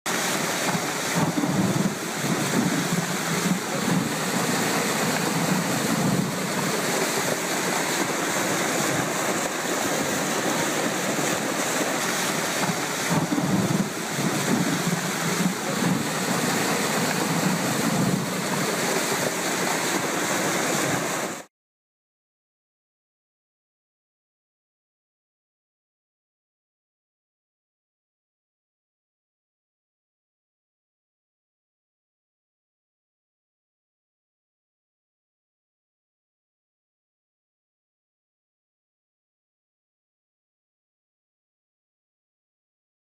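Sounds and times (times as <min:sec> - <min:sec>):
torrent of water rushing: 0:00.1 - 0:21.5.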